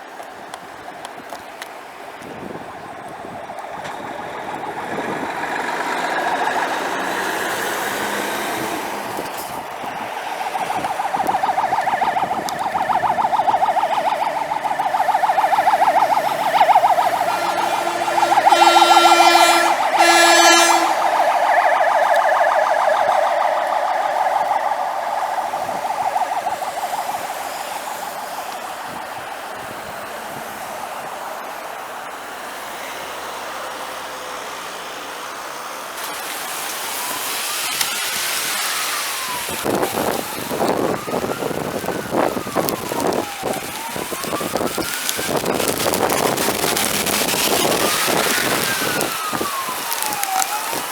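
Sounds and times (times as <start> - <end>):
fire engine siren warbling: 0.0 - 50.9
siren rising in pitch: 3.0 - 31.0, 36.0 - 50.9
horn blasts: 13.6 - 23.8.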